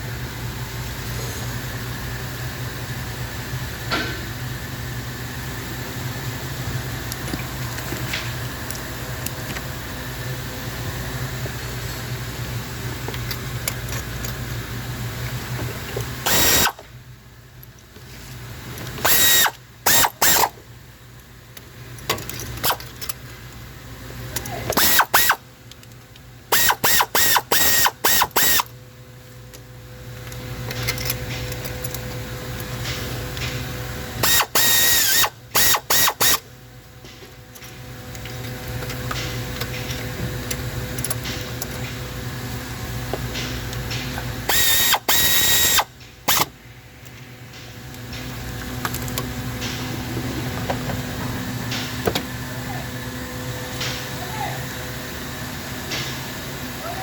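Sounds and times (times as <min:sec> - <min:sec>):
loud mechanical bursts: 0:16.2 - 0:16.8, 0:19.0 - 0:20.6, 0:24.7 - 0:25.4, 0:26.5 - 0:28.7, 0:34.2 - 0:36.5, 0:44.4 - 0:46.6
truck engine running: 0:37.2 - 0:56.8.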